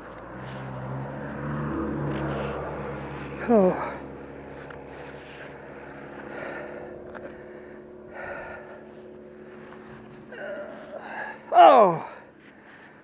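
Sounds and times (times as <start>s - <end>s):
distant traffic hum: 0.0s - 13.0s
person exhaling heavily: 5.0s - 8.8s, 10.3s - 12.9s.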